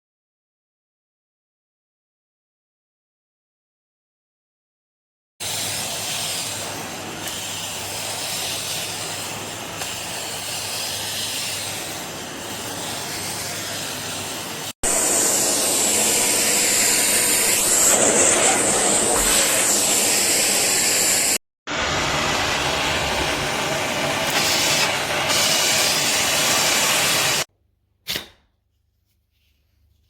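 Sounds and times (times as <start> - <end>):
vacuum cleaner running: 5.4 - 27.5.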